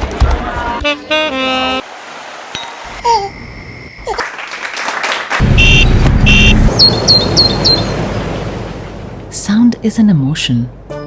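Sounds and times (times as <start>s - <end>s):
street traffic rumble: 0.0s - 11.0s
car horn toots: 5.4s - 6.8s.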